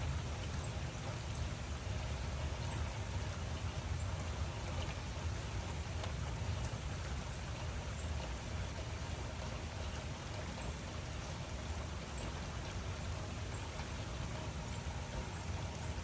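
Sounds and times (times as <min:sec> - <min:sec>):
steady rain hiss: 0:00.0 - 0:16.0.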